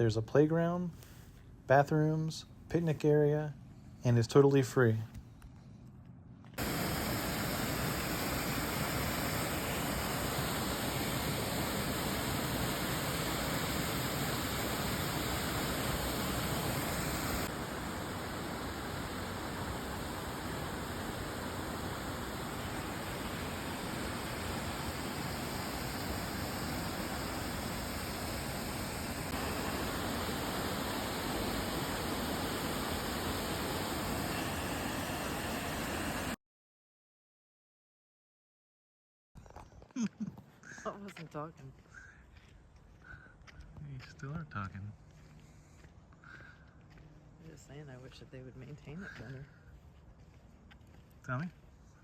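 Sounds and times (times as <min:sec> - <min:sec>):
waterfall rushing: 0:06.6 - 0:36.4.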